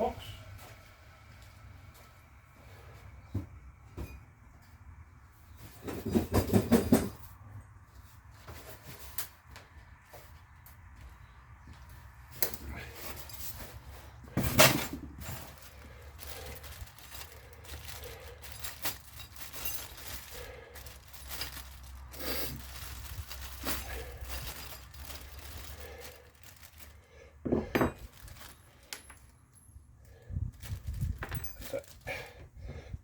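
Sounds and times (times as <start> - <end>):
small hard parts clinking: 14.4 - 32.3.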